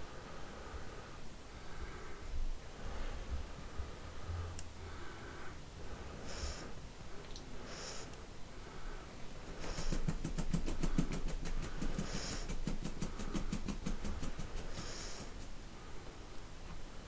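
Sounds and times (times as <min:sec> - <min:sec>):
plastic bottle tapped rapidly: 0:09.5 - 0:15.5
short soft hisses: 0:09.6 - 0:15.5.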